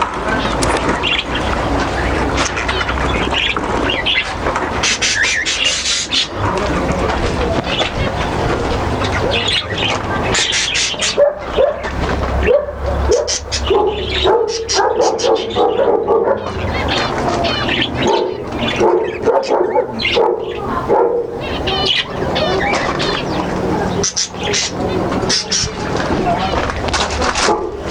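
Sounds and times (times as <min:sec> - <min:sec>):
cage birds chirping: 0:00.0 - 0:27.9
dogs barking: 0:00.0 - 0:27.9.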